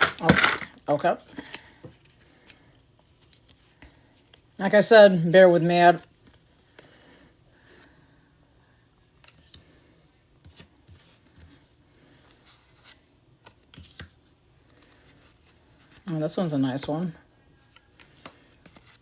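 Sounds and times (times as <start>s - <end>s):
trading cards clicking and rustling: 0.0s - 4.4s, 12.3s - 16.1s, 17.6s - 19.0s.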